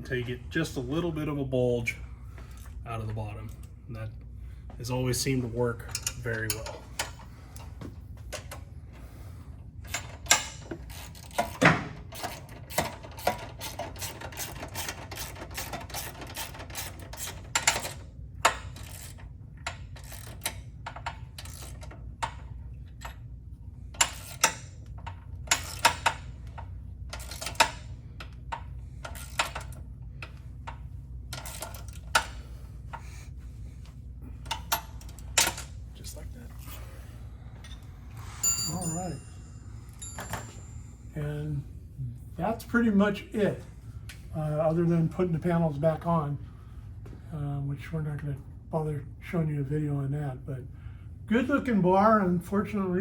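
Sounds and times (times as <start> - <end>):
low steady hum: 0.0 - 53.0
ratchet wrench clicking: 9.9 - 22.4, 24.0 - 24.6, 25.4 - 27.8, 29.0 - 29.8.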